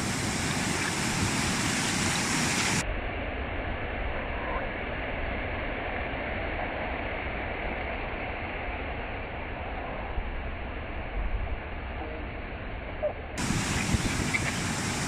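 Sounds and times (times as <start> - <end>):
ocean surf rushing: 0.0 - 2.8, 13.4 - 15.0.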